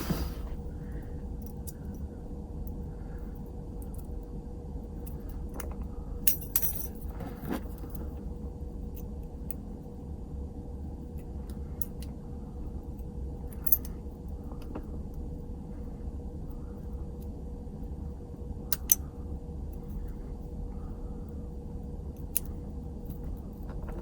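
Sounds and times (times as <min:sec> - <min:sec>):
small metal parts clinking: 0:05.0 - 0:07.1, 0:13.6 - 0:13.9.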